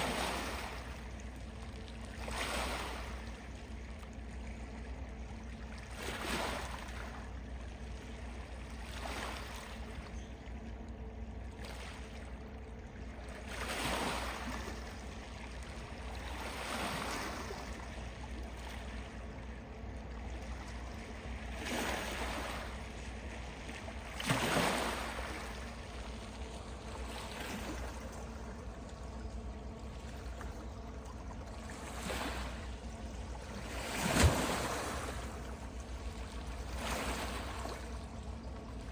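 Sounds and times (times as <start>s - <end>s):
small waves lapping: 0.0s - 38.9s.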